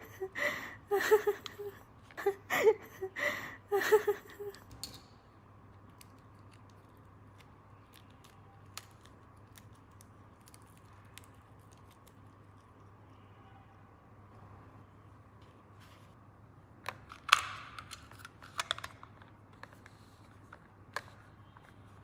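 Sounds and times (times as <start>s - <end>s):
plastic toy pieces clicking: 16.9s - 19.3s.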